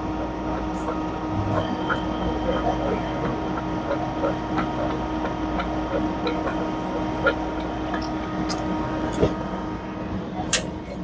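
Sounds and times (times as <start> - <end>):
frozen drink machine humming: 0.0 - 11.0.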